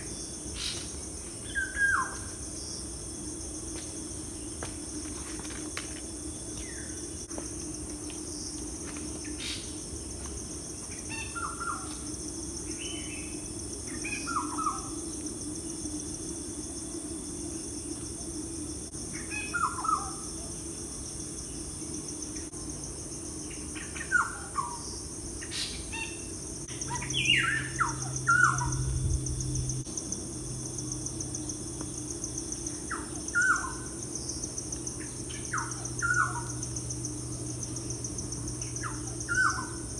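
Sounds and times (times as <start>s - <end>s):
high-pitched insect chorus: 0.0s - 39.9s
low steady hum: 26.4s - 39.9s.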